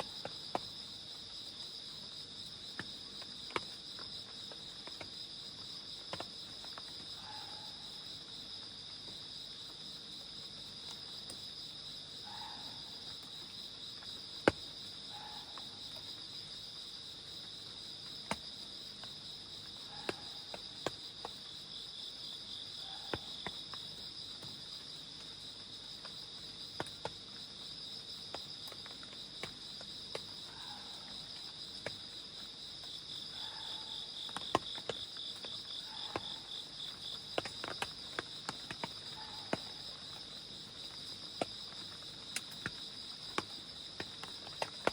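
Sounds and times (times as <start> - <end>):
crickets trilling: 0.0 - 44.9
raindrops ticking: 28.3 - 30.3, 36.9 - 44.9.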